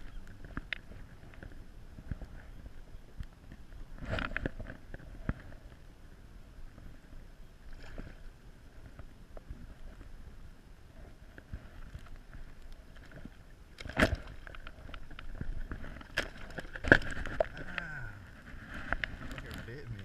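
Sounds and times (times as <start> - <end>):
kayak knocks and rustling: 11.0 - 20.0.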